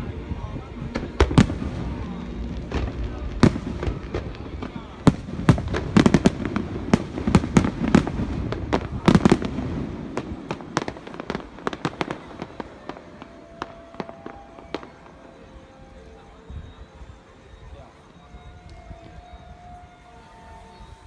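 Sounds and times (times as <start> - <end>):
low rumble: 0.0 - 6.9
fireworks bangs and crackles: 0.0 - 19.3.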